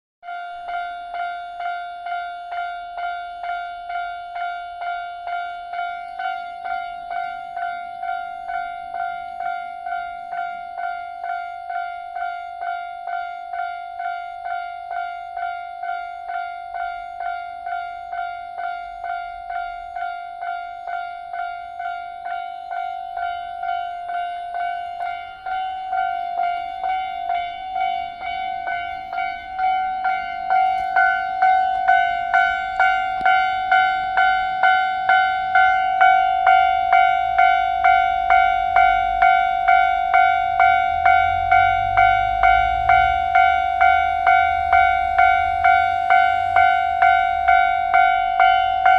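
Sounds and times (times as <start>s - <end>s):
level-crossing warning bell ringing: 0.2s - 48.9s.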